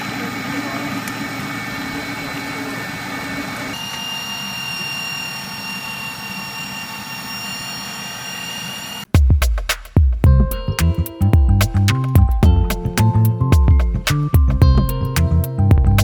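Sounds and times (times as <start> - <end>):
high-shear mixer whining: 0.0 - 9.1.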